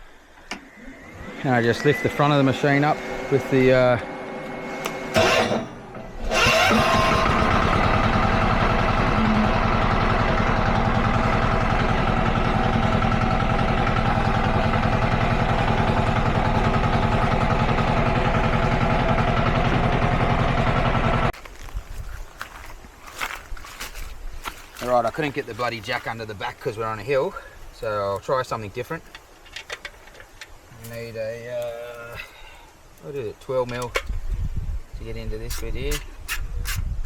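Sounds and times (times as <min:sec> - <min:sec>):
small engine starting and running: 0:00.4 - 0:21.4.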